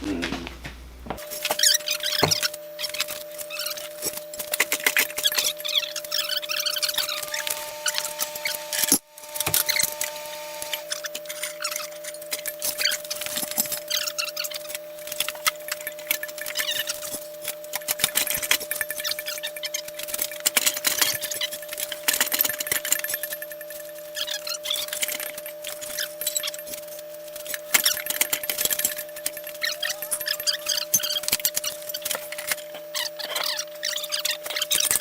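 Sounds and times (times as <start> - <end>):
steady electrical hum: 0.0 - 35.0
metal tools clicking and clattering: 10.6 - 35.0.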